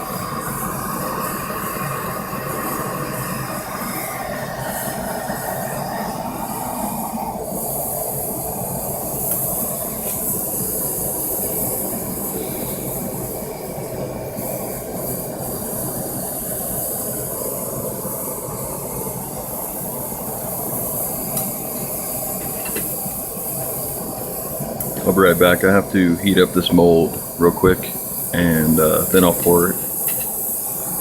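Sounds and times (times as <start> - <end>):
torch hissing with low rumble: 0.0 - 31.0.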